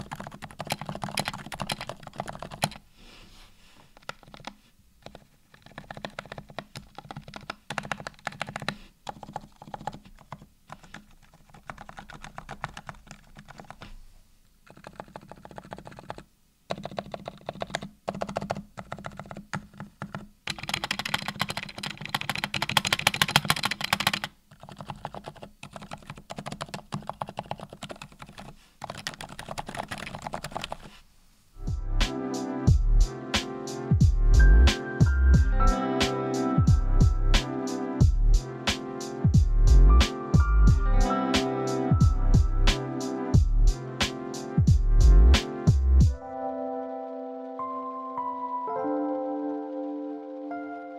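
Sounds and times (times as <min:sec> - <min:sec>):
soft keyboard keystrokes: 0:00.0 - 0:02.8, 0:03.9 - 0:14.0, 0:14.7 - 0:30.9.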